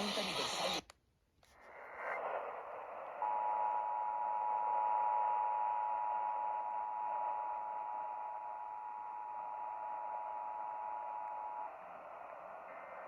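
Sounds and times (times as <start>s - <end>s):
radio hiss: 0.0s - 0.9s.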